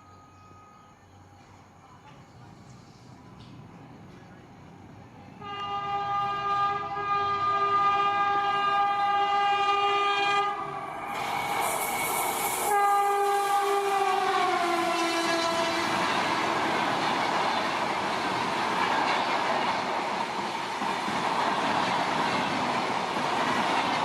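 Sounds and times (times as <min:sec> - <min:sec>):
train horn blasts: 0:05.4 - 0:16.5
train wheels clattering on track: 0:11.0 - 0:24.0.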